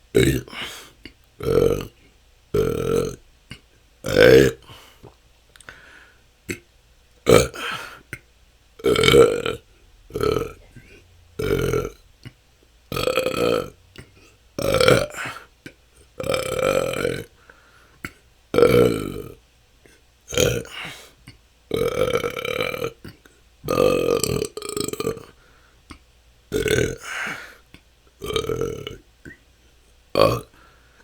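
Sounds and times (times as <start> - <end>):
person burping: 0.1 - 5.2, 6.5 - 8.0, 8.8 - 15.5, 16.2 - 17.4, 18.1 - 19.4, 20.3 - 21.0, 21.7 - 25.4, 26.5 - 27.6, 28.2 - 29.0, 30.2 - 30.6.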